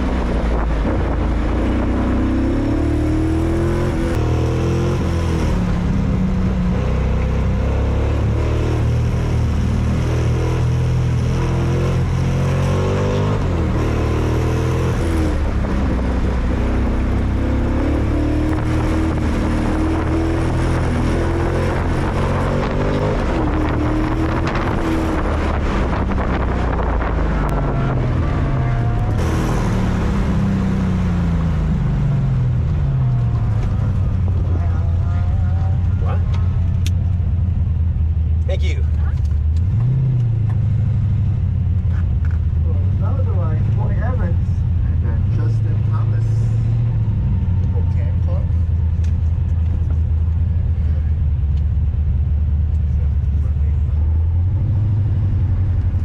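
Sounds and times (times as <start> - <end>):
wind noise: 0.0 - 6.8, 8.6 - 37.3
race car engine revving: 0.0 - 56.0.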